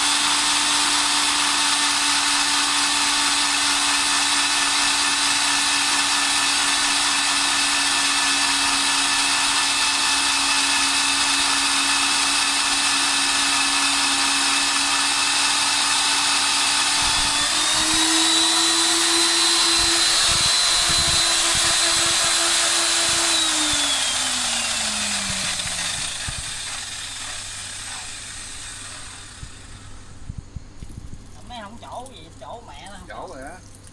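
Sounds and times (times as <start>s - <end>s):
core drill motor running: 0.0s - 30.4s.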